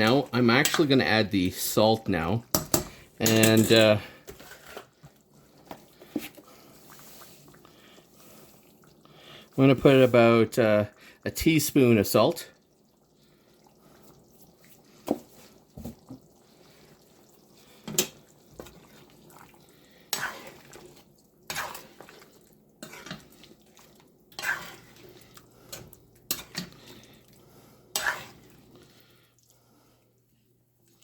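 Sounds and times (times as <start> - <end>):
utensil scraping metal pot: 2.5 - 5.0, 20.1 - 23.5, 24.3 - 26.9, 27.9 - 28.5.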